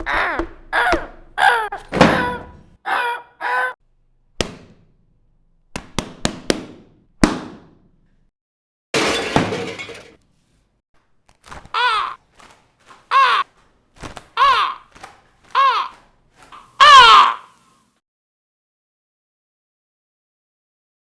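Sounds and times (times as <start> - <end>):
imitated crow caws: 16.8 - 17.6.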